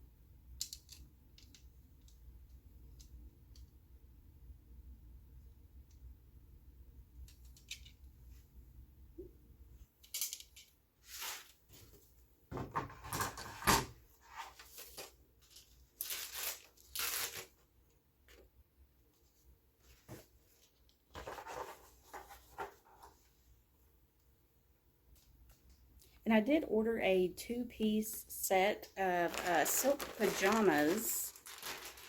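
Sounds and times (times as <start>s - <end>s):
packaging rustling and tearing: 14.6s - 17.6s, 29.2s - 32.0s.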